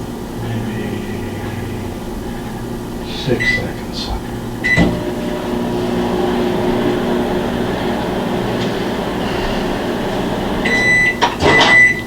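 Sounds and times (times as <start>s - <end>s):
microwave oven humming: 0.0s - 12.0s
microwave beeping: 1.5s - 12.0s
clunk: 4.7s - 7.3s, 8.0s - 12.0s.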